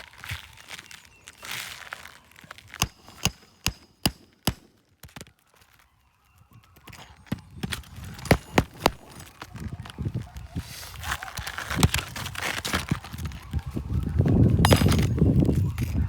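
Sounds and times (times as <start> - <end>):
shingle rustling: 0.1 - 5.9, 6.9 - 16.0
hammer blows on nail: 2.8 - 4.7.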